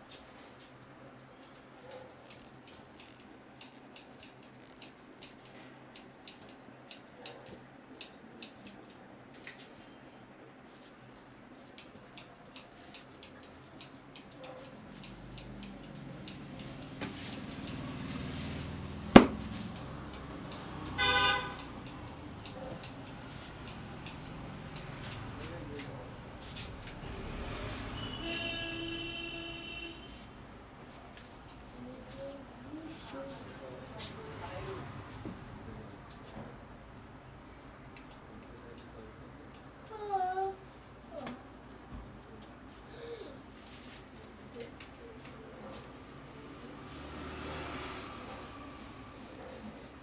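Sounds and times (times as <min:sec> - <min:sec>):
low street background: 0:00.0 - 0:50.0
vehicle horn honk: 0:20.9 - 0:21.7, 0:27.9 - 0:30.2.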